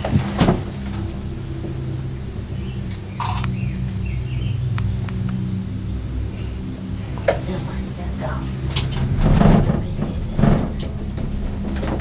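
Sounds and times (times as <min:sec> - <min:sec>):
cable car gondola hum: 0:00.0 - 0:12.0.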